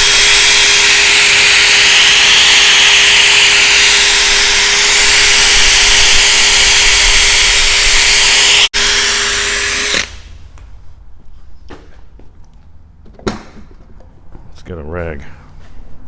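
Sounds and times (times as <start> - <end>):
electric drill whining: 0.0 - 10.3.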